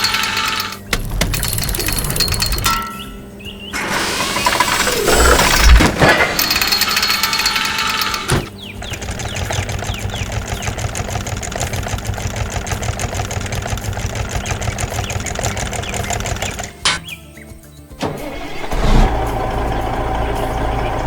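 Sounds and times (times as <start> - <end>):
machine clattering: 0.0 - 3.0, 3.8 - 17.0.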